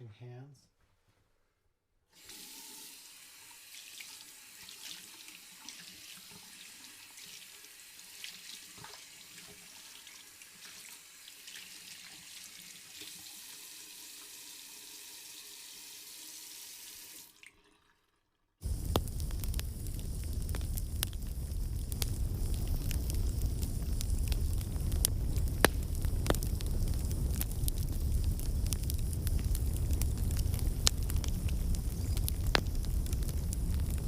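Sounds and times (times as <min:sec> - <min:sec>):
water running from tap: 0:02.2 - 0:18.2
loud crackling: 0:18.6 - 0:34.0.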